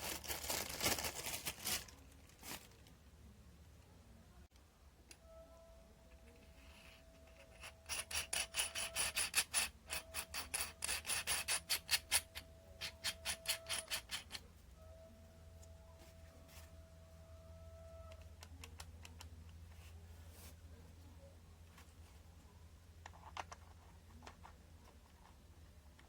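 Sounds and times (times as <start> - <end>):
faint steady tone: 2.8 - 9.0, 12.2 - 26.0
hand tool rasping strokes: 7.6 - 14.4.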